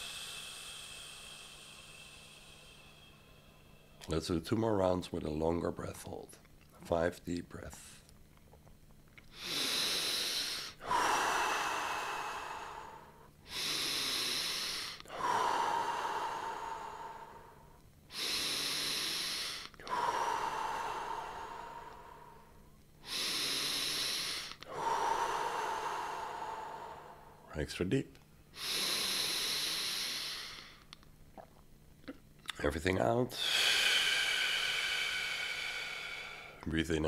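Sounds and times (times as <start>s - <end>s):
person breathing deeply: 0.0s - 4.1s, 9.3s - 27.5s, 28.5s - 30.9s, 33.3s - 36.7s.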